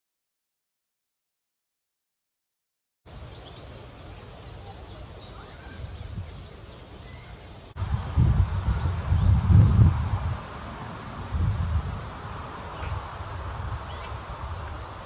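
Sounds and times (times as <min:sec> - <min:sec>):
small birds chirping: 0:03.1 - 0:15.0
wind rumble on microphone: 0:05.6 - 0:06.6, 0:07.7 - 0:15.0.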